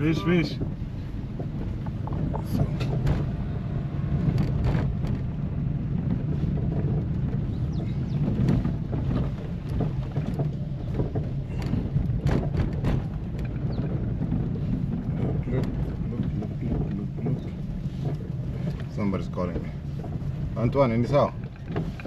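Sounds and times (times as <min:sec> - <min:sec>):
vehicle low rumble: 0:00.0 - 0:22.0
wind buffeting microphone: 0:00.0 - 0:22.0
knocks: 0:06.1 - 0:18.9.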